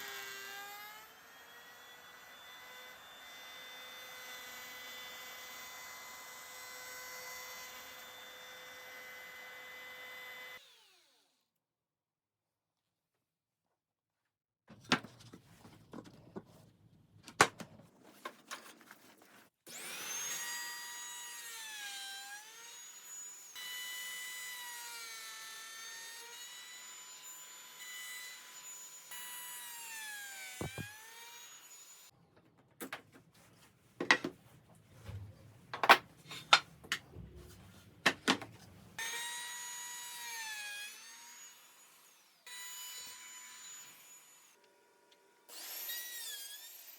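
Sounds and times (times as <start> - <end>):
power saw whining through wood: 0.0 - 11.4, 19.7 - 32.1, 39.0 - 46.9.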